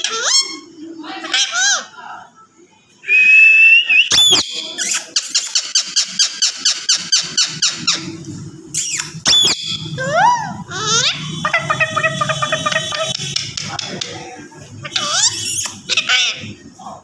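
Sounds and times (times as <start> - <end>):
parrot chirping: 0.0 - 1.9, 4.1 - 14.1, 14.7 - 16.7
parrot whistling: 3.1 - 8.1, 8.7 - 13.4
parrot shrieking: 4.1 - 8.1, 8.7 - 13.2, 14.8 - 16.6.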